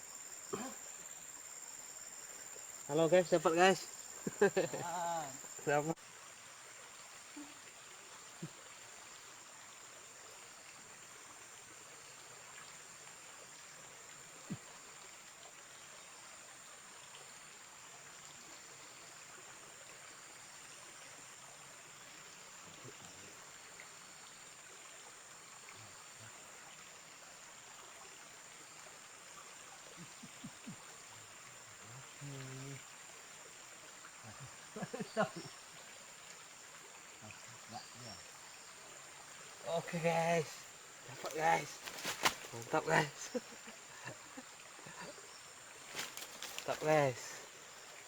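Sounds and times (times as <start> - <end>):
high-pitched insect drone: 0.0 - 6.0
flowing river water: 0.0 - 48.0.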